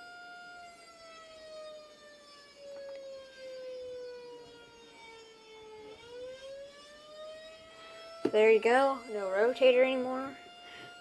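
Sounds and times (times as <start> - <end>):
warning siren wailing: 0.0 - 11.0.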